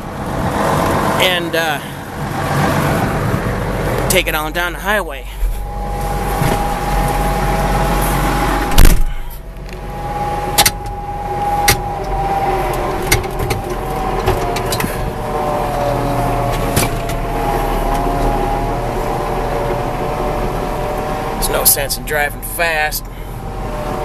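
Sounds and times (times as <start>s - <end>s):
tractor engine running: 0.0s - 24.0s
clunks and rattles: 5.3s - 21.4s.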